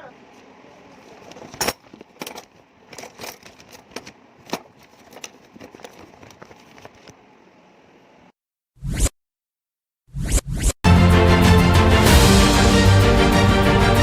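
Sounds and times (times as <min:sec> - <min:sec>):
tools and metal parts clicking: 0:01.3 - 0:06.2.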